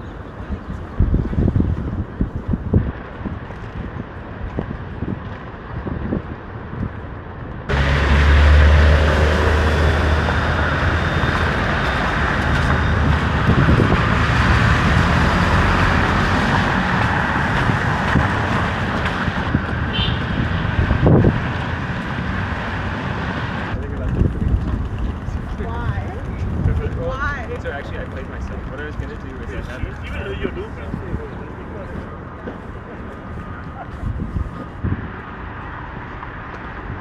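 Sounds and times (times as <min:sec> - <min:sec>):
passing motor vehicles: 0:00.0 - 0:37.0.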